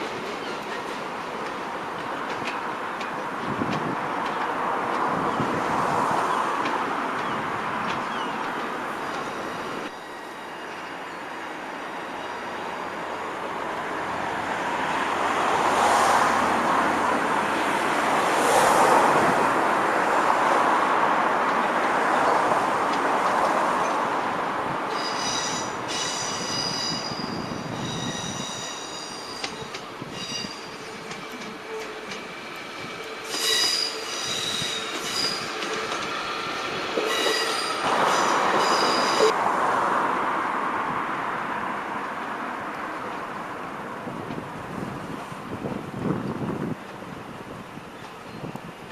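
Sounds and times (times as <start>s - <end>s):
train rumbling through station: 0.0s - 48.9s
train wheels squealing: 9.0s - 13.0s, 24.9s - 39.4s.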